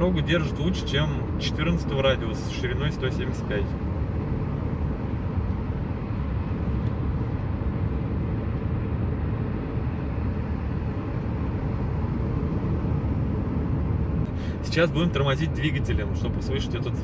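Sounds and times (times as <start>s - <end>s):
car engine low rumble: 0.0s - 17.0s
tyre and road noise: 0.0s - 17.0s.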